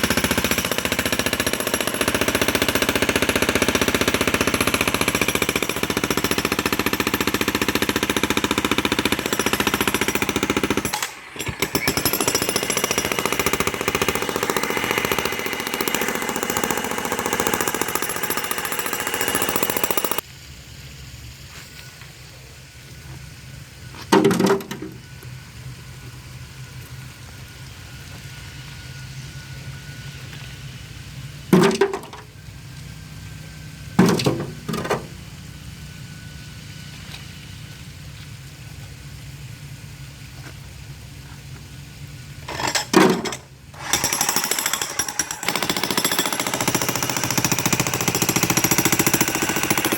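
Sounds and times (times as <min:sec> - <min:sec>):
jackhammer breaking concrete: 0:00.0 - 0:20.2, 0:42.5 - 0:49.9.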